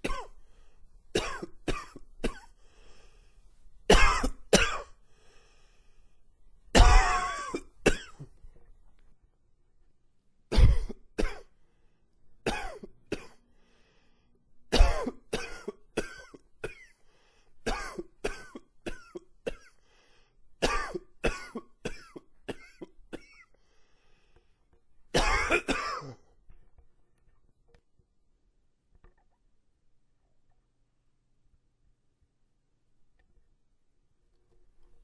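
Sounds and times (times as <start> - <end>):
man coughing: 0.0 - 0.3, 1.2 - 2.5, 3.9 - 4.9, 6.8 - 8.3, 10.5 - 11.5, 12.5 - 13.4, 14.7 - 16.9, 17.7 - 19.7, 20.6 - 23.4, 25.2 - 26.3
breathing: 0.3 - 1.0, 2.5 - 3.6, 5.0 - 6.3, 11.5 - 12.2, 13.4 - 14.5, 16.9 - 17.6, 19.7 - 20.6, 23.4 - 24.8.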